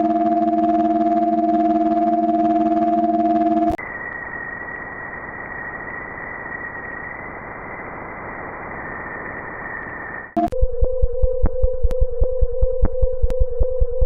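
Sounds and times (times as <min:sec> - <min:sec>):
low synthetic chord: 0:00.0 - 0:03.8
static hiss: 0:03.8 - 0:10.4
thin steady whistle: 0:03.8 - 0:10.4.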